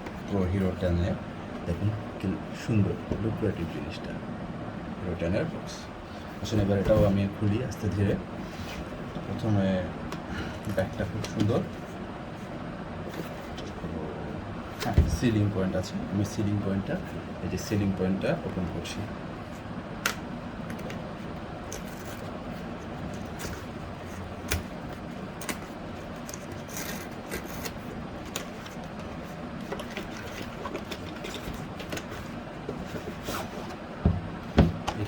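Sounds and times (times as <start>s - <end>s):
steady background hum: 0.0s - 35.0s
cardboard and plastic scraping: 21.7s - 35.0s.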